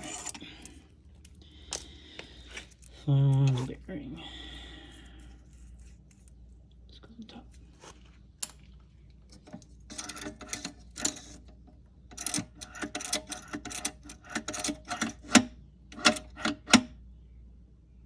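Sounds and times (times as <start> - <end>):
metallic clicks and clanks of tools: 9.3 - 16.9.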